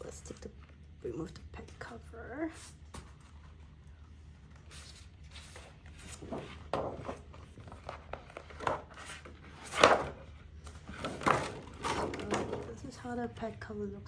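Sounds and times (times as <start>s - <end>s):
plastic cover rustling and scraping: 2.5s - 13.1s.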